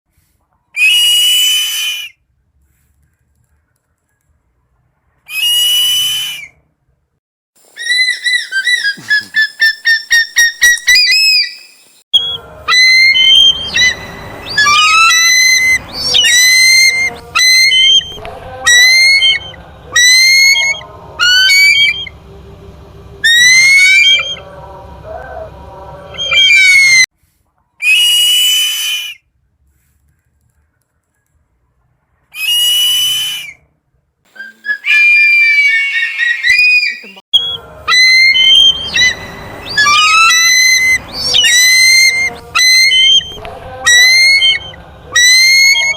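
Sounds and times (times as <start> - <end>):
eagle screeching: 0.8 - 2.2, 7.7 - 22.2, 23.2 - 27.1, 27.8 - 29.2, 34.3 - 45.9
low background rumble: 12.2 - 27.1, 37.4 - 45.9.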